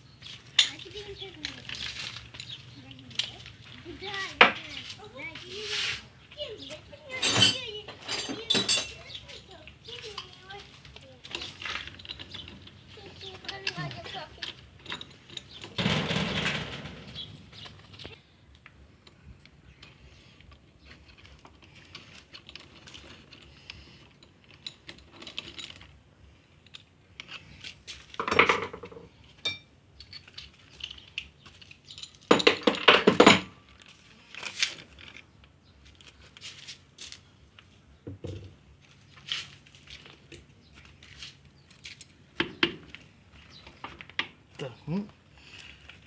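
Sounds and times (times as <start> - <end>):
metal tools clattering on workbench: 0.6 - 3.4, 7.1 - 10.2, 13.4 - 18.1, 28.2 - 31.0, 31.8 - 33.6.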